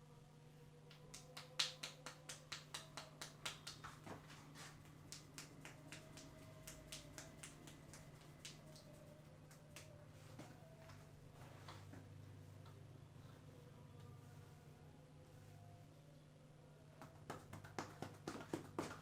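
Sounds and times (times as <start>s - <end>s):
sharp clicks of hands massaging: 0.9s - 9.9s.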